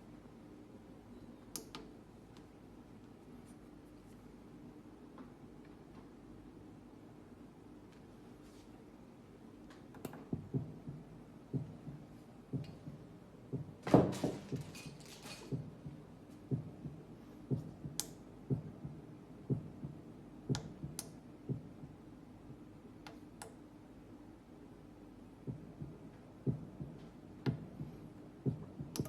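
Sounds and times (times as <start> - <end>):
low heart thumps: 10.3 - 14.8, 15.5 - 22.6, 25.5 - 29.0
rustling clatter: 14.1 - 15.6
sharp clicks: 17.6 - 18.2.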